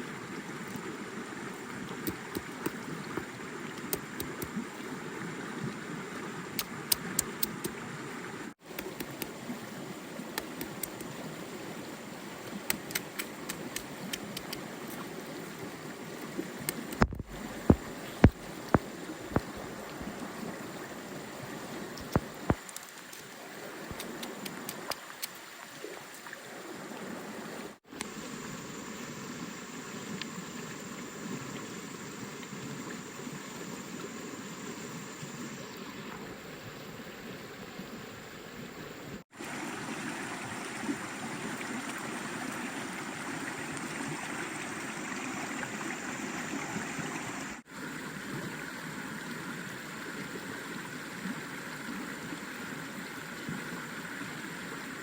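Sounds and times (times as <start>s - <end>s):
stream water running: 0.0s - 55.0s
sharp clicks: 3.8s - 4.5s, 12.7s - 14.6s, 23.9s - 25.3s.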